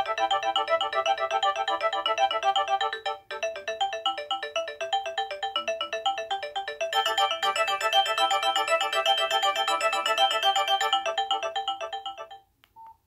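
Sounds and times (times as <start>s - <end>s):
mobile phone ringtone melody: 0.0s - 12.5s.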